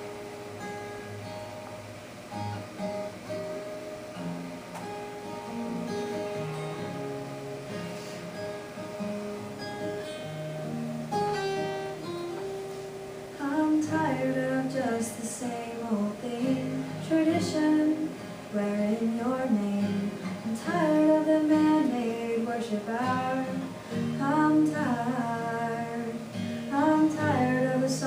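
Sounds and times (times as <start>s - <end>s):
acoustic guitar playing: 0.0s - 28.0s
person singing: 13.4s - 28.0s.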